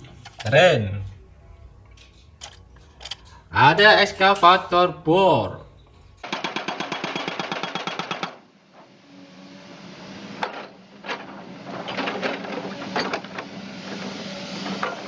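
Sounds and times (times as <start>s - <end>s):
drilling machinery hammering: 0.0s - 6.2s
sharp clicks: 0.0s - 6.2s.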